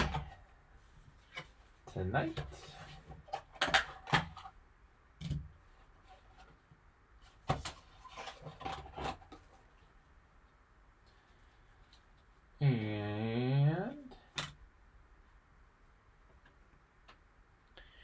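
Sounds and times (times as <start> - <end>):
card packaging knocks and rustles: 0.0 - 0.4.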